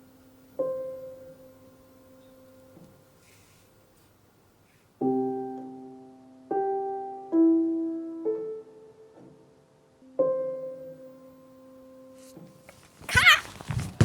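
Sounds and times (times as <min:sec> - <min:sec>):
slow solo piano chords: 0:00.2 - 0:03.1, 0:05.0 - 0:12.2.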